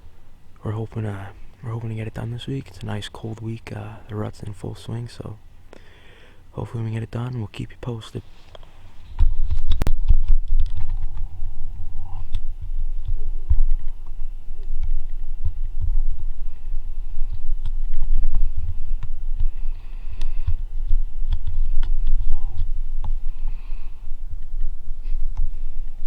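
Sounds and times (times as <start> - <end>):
low rumble: 9.0 - 26.0.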